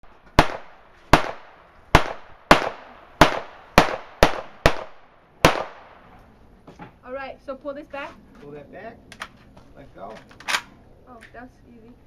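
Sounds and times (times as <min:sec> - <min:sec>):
shotgun shots with echo: 0:00.4 - 0:06.0.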